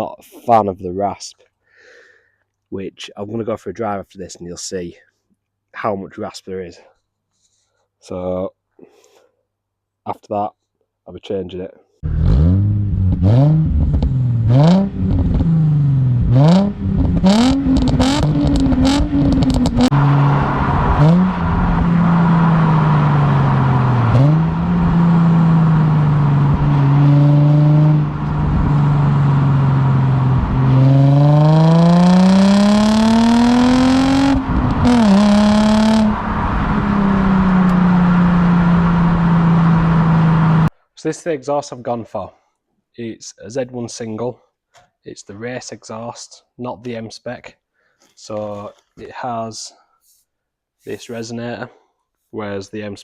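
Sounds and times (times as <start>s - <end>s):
car engine revving and driving: 12.0s - 40.7s
gear change: 12.0s - 40.7s.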